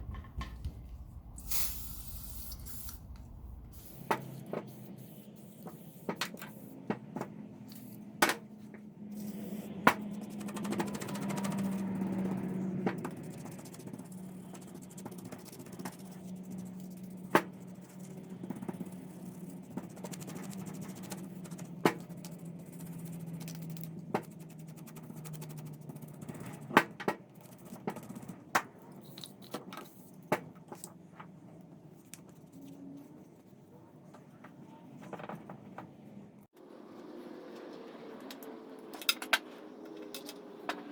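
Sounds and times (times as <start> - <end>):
low steady hum: 0.0 - 25.5.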